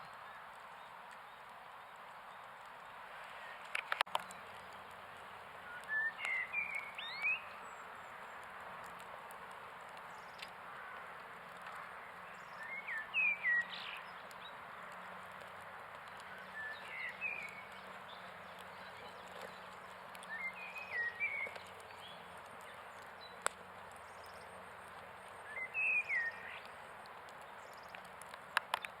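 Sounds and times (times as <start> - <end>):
bird chirping: 5.6 - 8.5, 11.6 - 14.6, 16.0 - 29.0.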